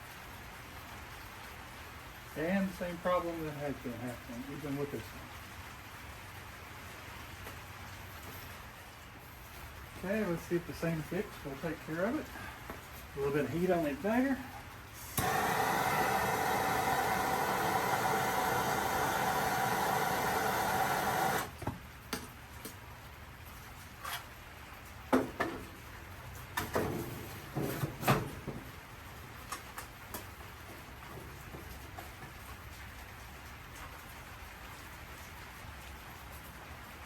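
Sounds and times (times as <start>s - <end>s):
heat tool running: 15.0s - 21.6s.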